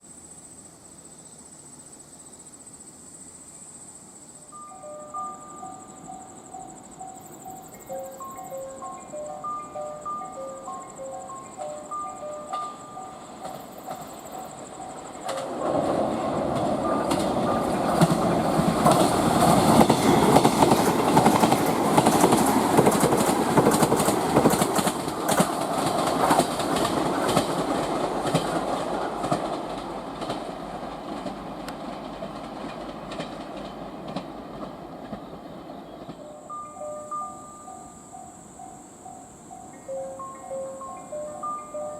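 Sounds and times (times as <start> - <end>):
train wheels clacking on rails: 4.8 - 37.8.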